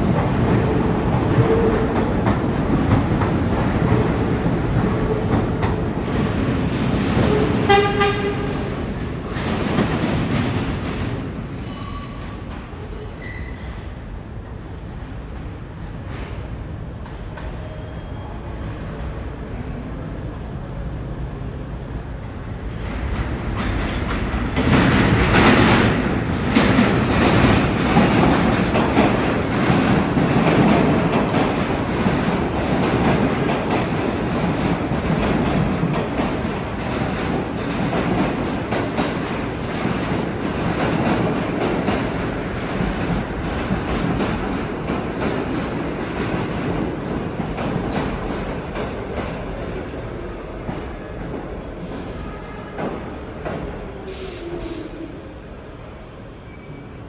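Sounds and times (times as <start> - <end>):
subway train running: 0.0 - 57.0.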